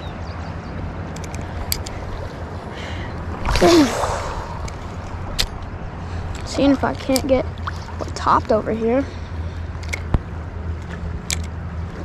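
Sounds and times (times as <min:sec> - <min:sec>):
sharp clicks: 0:01.1 - 0:02.0
river current rushing: 0:01.2 - 0:06.8.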